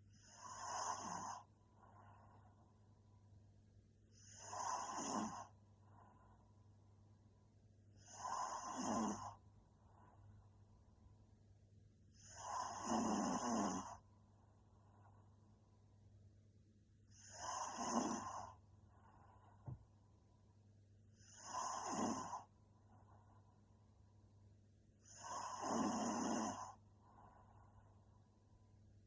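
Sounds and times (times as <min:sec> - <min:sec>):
faint breathing: 0:00.0 - 0:03.0, 0:04.0 - 0:06.7, 0:18.2 - 0:19.8, 0:26.6 - 0:28.4
woman snoring: 0:00.1 - 0:01.5, 0:04.1 - 0:05.6, 0:08.0 - 0:09.4, 0:12.2 - 0:14.0, 0:17.1 - 0:18.6, 0:21.2 - 0:22.5, 0:25.0 - 0:26.8.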